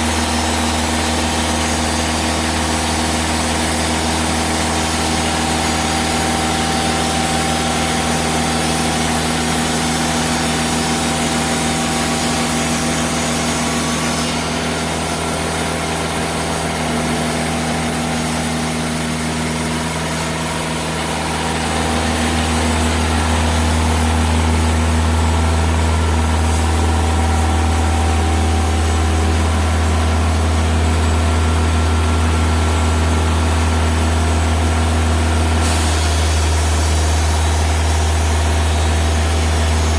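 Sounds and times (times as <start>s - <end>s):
sawmill diesel engine humming: 0.0s - 39.9s.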